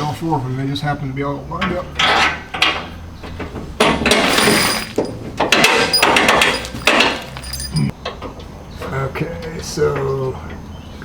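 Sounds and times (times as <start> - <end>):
metal bolts clattering and scraping: 2.0 - 7.9.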